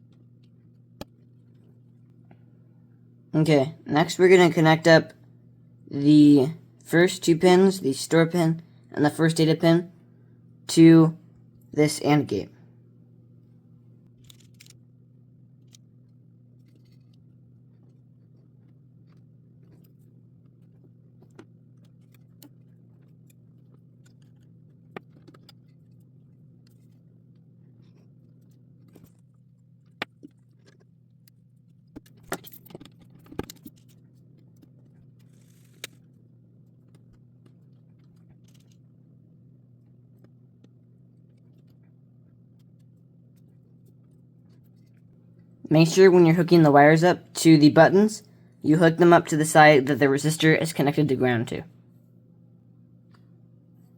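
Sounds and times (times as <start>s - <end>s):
low steady hum: 0.0s - 53.9s.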